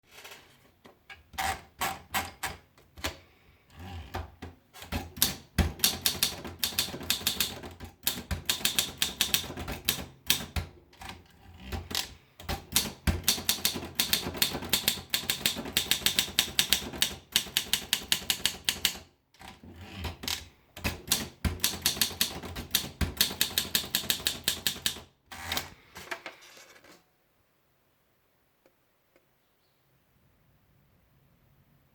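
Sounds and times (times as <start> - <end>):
manual typewriter typing: 1.4 - 25.9.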